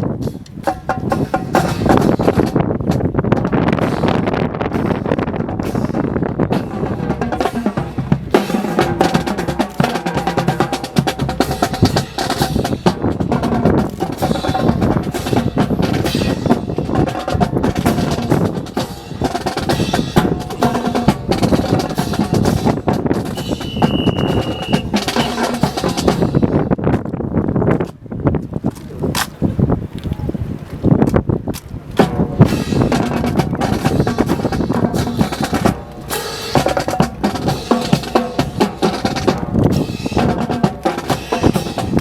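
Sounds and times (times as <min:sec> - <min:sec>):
rapid snare drumming: 0:00.3 - 0:26.6, 0:32.0 - 0:42.0.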